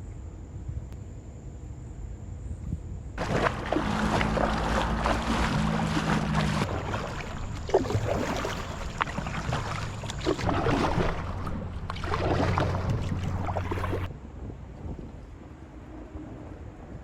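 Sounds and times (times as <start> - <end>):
low steady hum: 0.0 - 17.0
water splashing around a canoe: 3.2 - 14.1.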